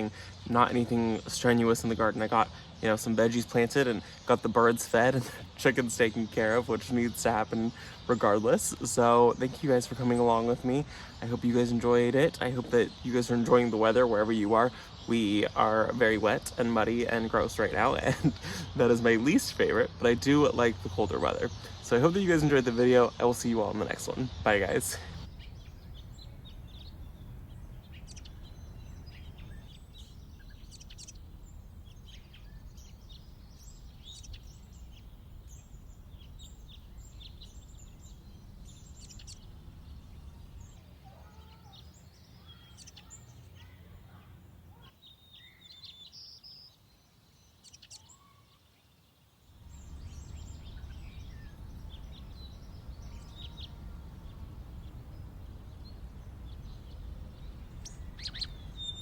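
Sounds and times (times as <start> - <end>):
small birds chirping: 0.0 - 59.0
low background rumble: 25.1 - 42.7, 49.6 - 59.0.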